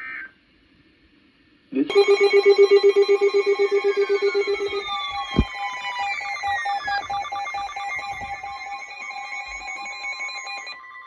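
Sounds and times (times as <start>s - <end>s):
electronic alarm trilling: 1.9s - 11.0s.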